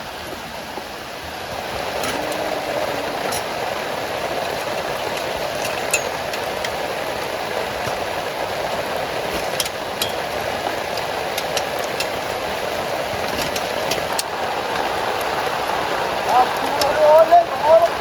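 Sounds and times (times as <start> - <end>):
heavy rain on a tent: 0.0 - 18.0
raindrop ticks: 1.5 - 18.0.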